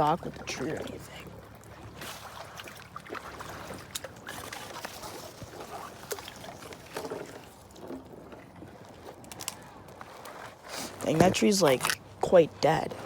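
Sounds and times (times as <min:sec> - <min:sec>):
paddle strokes splashing: 0:00.0 - 0:13.0.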